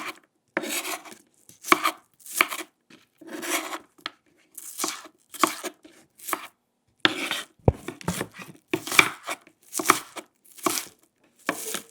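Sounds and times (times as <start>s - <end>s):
knife cutting vegetables on board: 0.0s - 3.9s, 4.7s - 11.9s
knife blade knocking on board: 7.7s - 8.5s.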